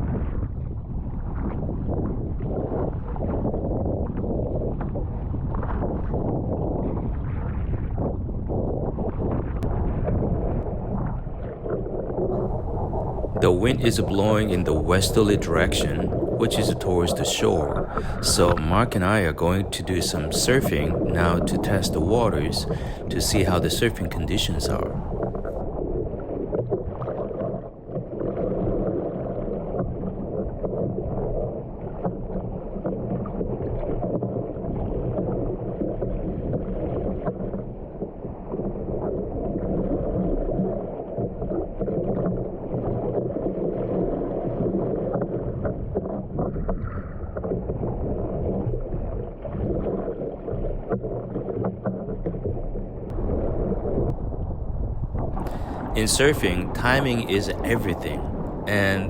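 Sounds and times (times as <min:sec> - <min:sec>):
gale-force wind: 0:00.0 - 0:26.4, 0:53.1 - 0:59.0
waves: 0:00.0 - 0:59.0.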